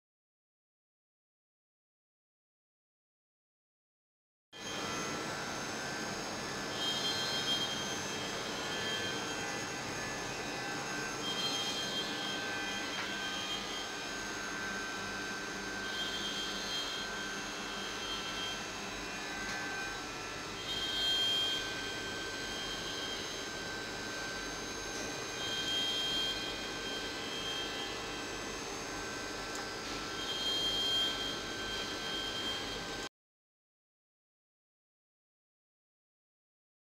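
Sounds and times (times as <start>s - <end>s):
milling machine whine: 4.6s - 33.1s.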